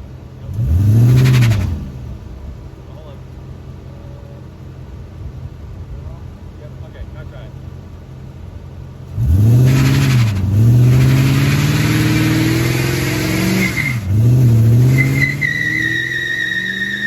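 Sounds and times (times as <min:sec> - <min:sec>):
car engine revving hard: 0:00.5 - 0:02.3, 0:09.0 - 0:17.0
tyres squealing: 0:09.6 - 0:17.0.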